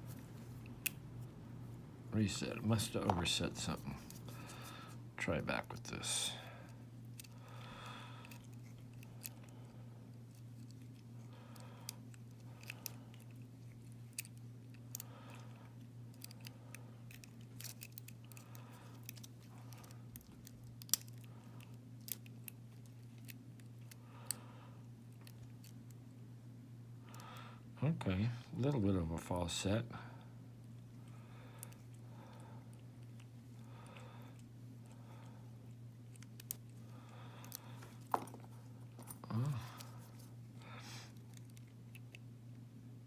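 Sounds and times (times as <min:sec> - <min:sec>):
steady low hum: 0:00.0 - 0:43.0.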